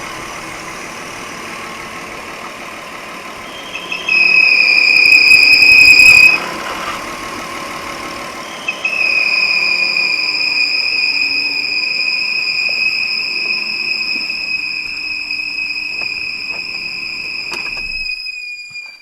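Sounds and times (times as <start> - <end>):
car engine idling: 0.0 - 8.6
high-pitched air whistle: 3.4 - 6.5, 8.4 - 19.0.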